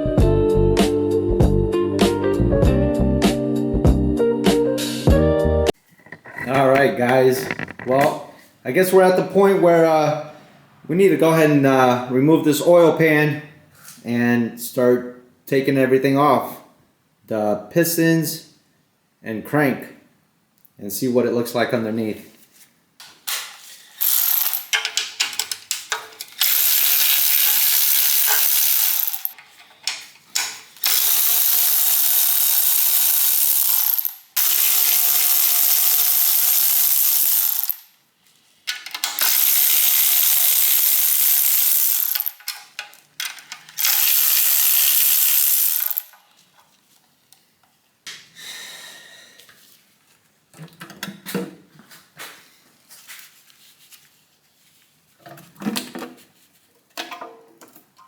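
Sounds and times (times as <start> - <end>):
power tool spinning bolts: 5.8 - 8.1, 24.0 - 29.4, 30.8 - 37.9, 38.8 - 46.2
clatter of metal parts: 5.8 - 8.2, 24.0 - 37.9, 38.7 - 46.4
clicks and metal handling: 5.8 - 8.2, 24.5 - 26.5, 38.7 - 39.3, 42.2 - 43.8.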